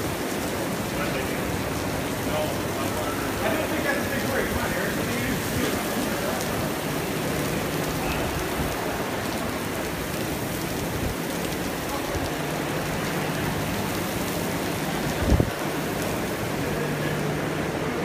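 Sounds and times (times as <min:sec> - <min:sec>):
heavy rain hissing: 0:00.0 - 0:18.0.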